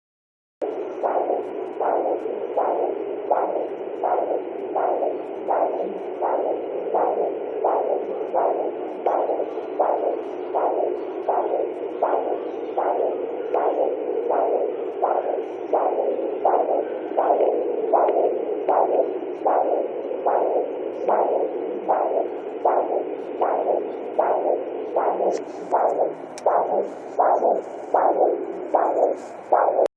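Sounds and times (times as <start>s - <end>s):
doppler heartbeat whooshing pulses: 0.6s - 29.9s
steady hiss: 21.6s - 29.5s.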